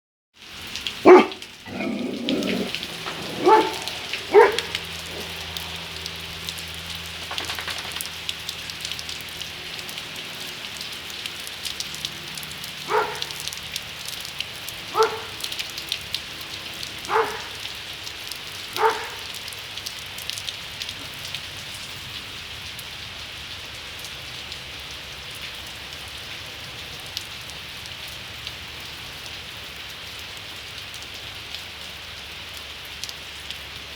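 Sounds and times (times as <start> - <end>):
heavy rain: 0.4 - 33.9
dog barking: 1.0 - 5.9, 12.8 - 13.6, 14.8 - 15.6, 17.0 - 17.8, 18.7 - 19.4.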